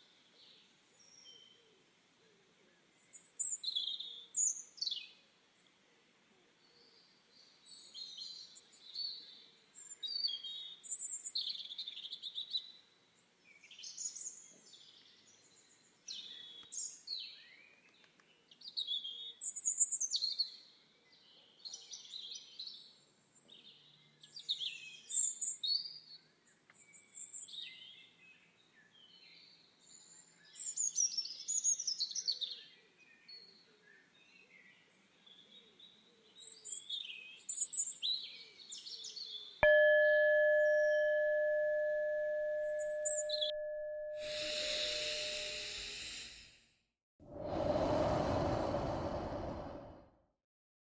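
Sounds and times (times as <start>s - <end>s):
songbirds chirping and warbling: 0.0s - 39.6s, 42.7s - 43.6s.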